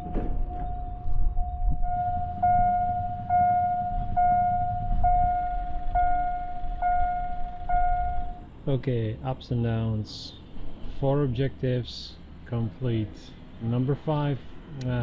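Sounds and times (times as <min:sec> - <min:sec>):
electronic warning alarm tone: 0:00.0 - 0:08.5
low rumble: 0:00.0 - 0:09.6.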